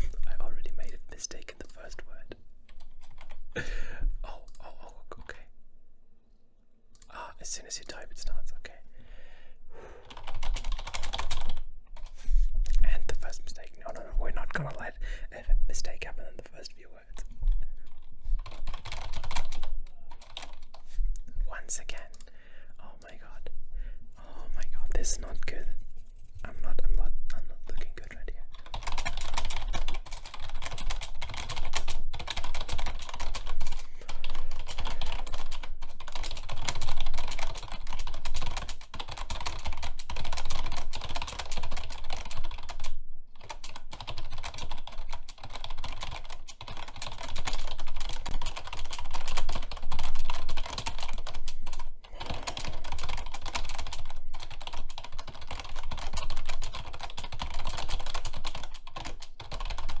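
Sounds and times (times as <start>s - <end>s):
fast typing on keyboard: 0.0s - 5.4s, 10.0s - 12.2s, 17.1s - 21.0s, 27.7s - 60.0s.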